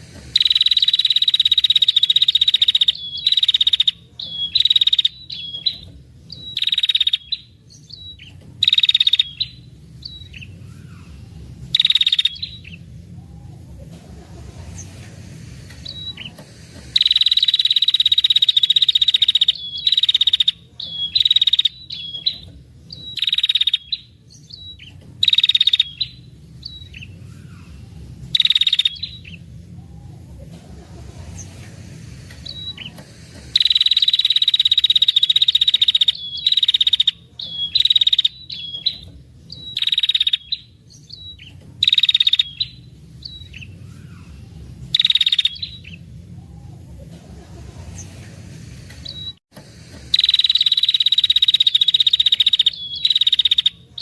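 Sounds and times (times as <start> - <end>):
bird buzzing trills: 0.0 - 7.5, 14.6 - 22.4, 31.2 - 38.7, 49.9 - 53.7
bird sharp chirps: 0.1 - 13.7, 15.7 - 30.2, 32.4 - 46.8, 49.0 - 49.4, 50.1 - 54.0.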